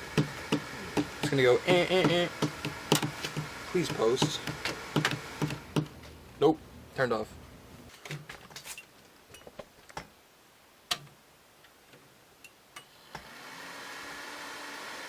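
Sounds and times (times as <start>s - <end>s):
computer fans whirring: 0.0s - 6.0s.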